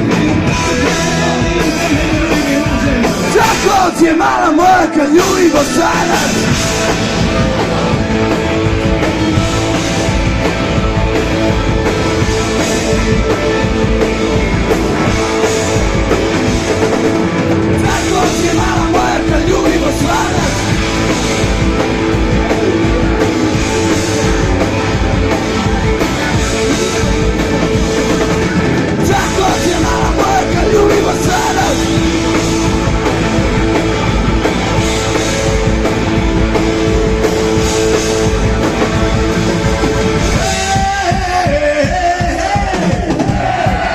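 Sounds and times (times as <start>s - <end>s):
rock band playing: 0.0s - 43.9s
wavering lead melody: 29.4s - 34.2s.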